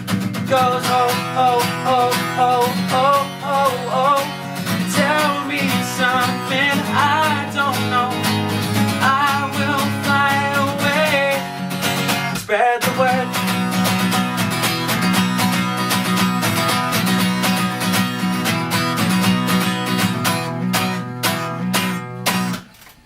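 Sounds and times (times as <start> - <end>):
strummed acoustic guitar: 0.0 - 23.0
person singing wordless melody: 0.4 - 11.6, 12.4 - 13.6.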